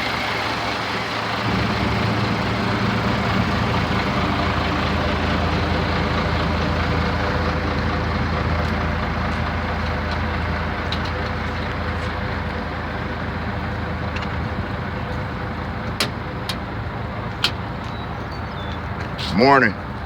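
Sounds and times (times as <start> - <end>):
heavy diesel engine running: 0.0 - 20.0.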